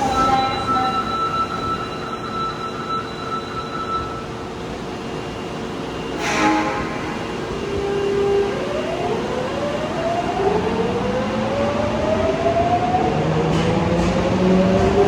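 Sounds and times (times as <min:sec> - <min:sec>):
rumble of train cars: 0:00.0 - 0:15.0.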